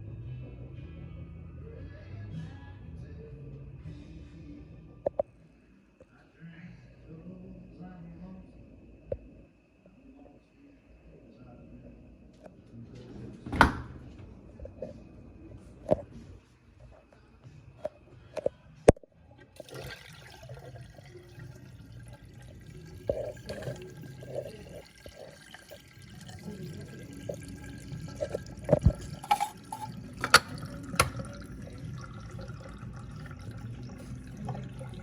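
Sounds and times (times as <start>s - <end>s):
drain pump humming: 19.4s - 35.0s
water rushing through drain: 19.4s - 35.0s.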